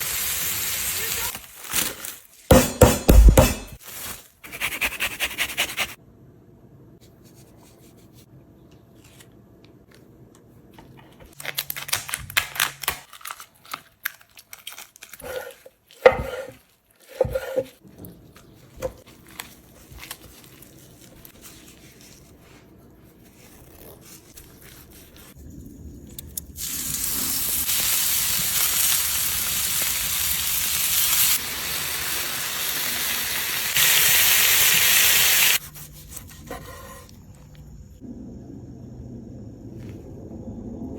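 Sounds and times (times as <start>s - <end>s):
meat sizzling: 0.0s - 1.4s, 26.6s - 35.6s.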